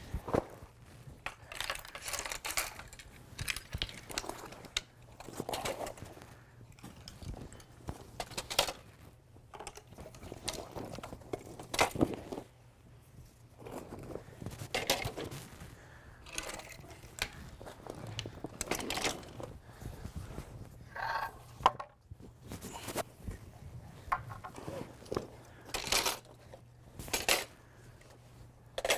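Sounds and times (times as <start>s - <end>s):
frame parts clacking and knocking: 1.2s - 6.1s, 14.6s - 15.5s, 16.3s - 19.6s.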